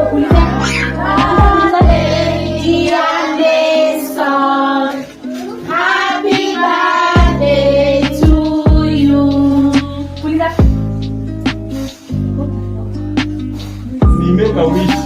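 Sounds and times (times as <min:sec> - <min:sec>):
person singing: 0:00.0 - 0:10.7
bass and drums beat: 0:00.2 - 0:02.4, 0:07.2 - 0:15.0.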